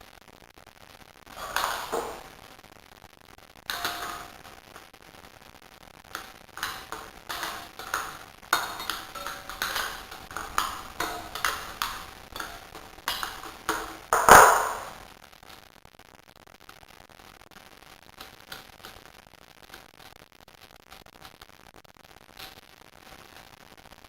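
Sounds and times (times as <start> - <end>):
metal tools clinking: 1.4 - 2.2, 3.7 - 4.4, 6.2 - 14.9
loud metal knock: 1.4 - 2.3, 3.7 - 4.4, 6.2 - 15.0.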